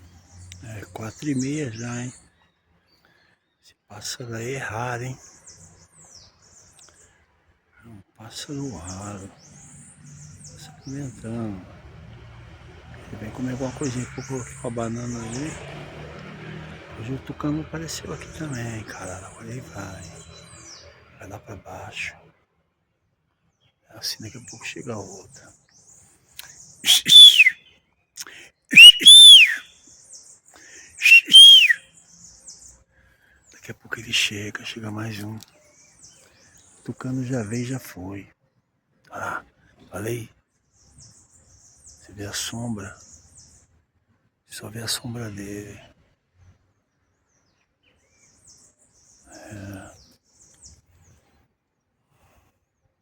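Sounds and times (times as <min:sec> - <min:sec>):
small birds chirping: 0:00.0 - 0:11.8, 0:13.0 - 0:16.3, 0:17.0 - 0:22.2, 0:23.5 - 0:38.4, 0:39.0 - 0:43.8, 0:46.4 - 0:51.5
loud rising and falling whistles: 0:26.8 - 0:27.6, 0:28.7 - 0:29.7, 0:31.0 - 0:31.8.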